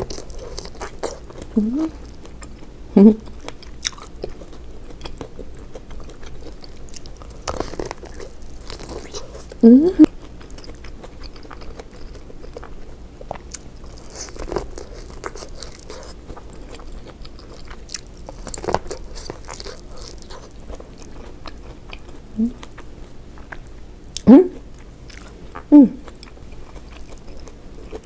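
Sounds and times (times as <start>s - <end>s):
person chewing food: 0.0s - 28.0s.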